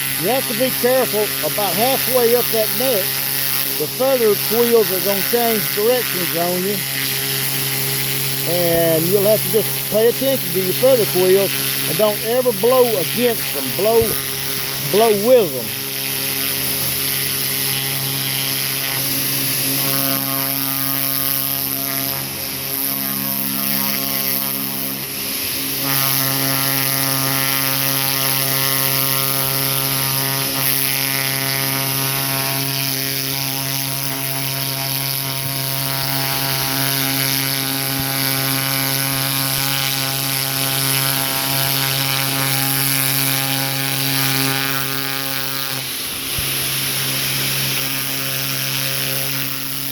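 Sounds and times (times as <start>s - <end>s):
pressure washer motor drone: 0.0s - 49.9s
water jet spraying hiss: 44.6s - 49.6s.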